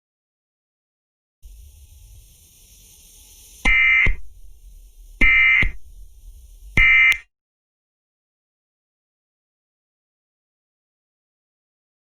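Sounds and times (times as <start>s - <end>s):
buzzy digital data tones: 1.4s - 7.2s
faint radio hiss: 1.5s - 7.2s.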